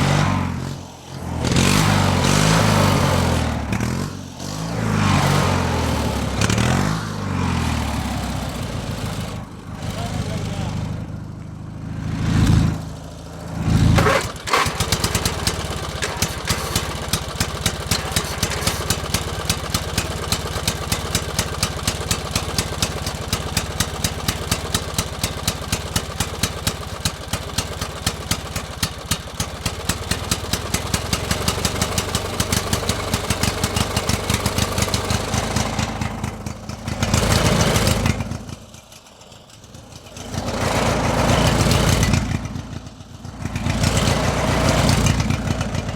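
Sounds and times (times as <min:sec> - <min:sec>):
motor running with rapid firing: 0:12.0 - 0:25.1.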